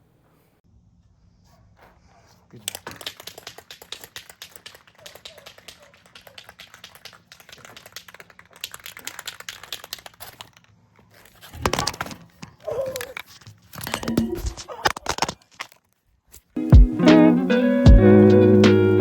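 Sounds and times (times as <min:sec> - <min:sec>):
crinkling and rustling: 0:02.6 - 0:16.6.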